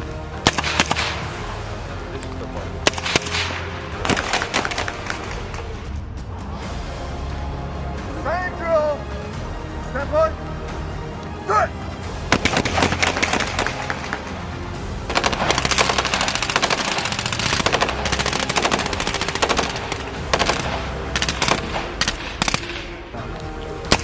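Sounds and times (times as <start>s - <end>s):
automatic rifle fire: 0.4s - 1.3s, 2.8s - 5.3s, 12.3s - 14.2s, 15.1s - 22.9s.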